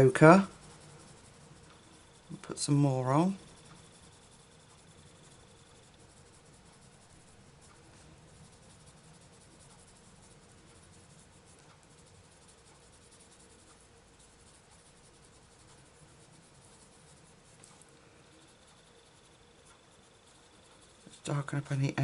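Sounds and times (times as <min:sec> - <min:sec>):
pencil scratching on paper: 0:00.0 - 0:22.0.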